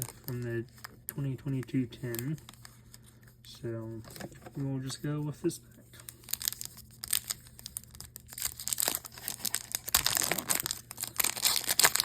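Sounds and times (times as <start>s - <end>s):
foil wrapper crinkling and tearing: 0.0s - 3.0s, 6.0s - 12.0s.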